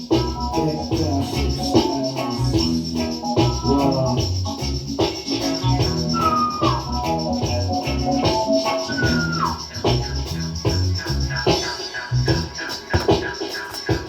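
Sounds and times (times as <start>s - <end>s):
reggae music: 0.0s - 14.0s.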